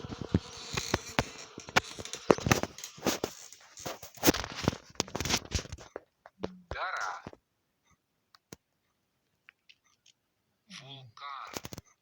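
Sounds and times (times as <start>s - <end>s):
faint hiss: 0.0s - 4.9s
sharp clicks and crackles: 0.0s - 7.4s, 11.5s - 12.0s.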